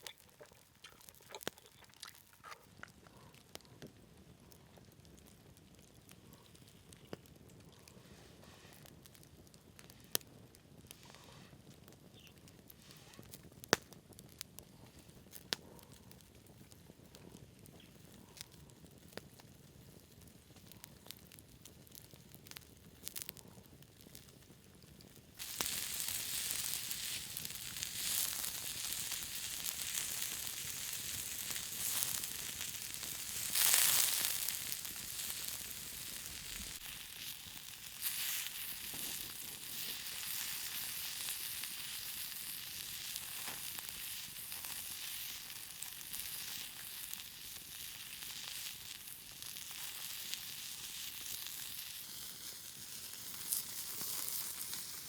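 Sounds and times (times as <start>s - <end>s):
small pops: 9.8s - 19.4s
meat sizzling on a grill: 25.2s - 55.0s.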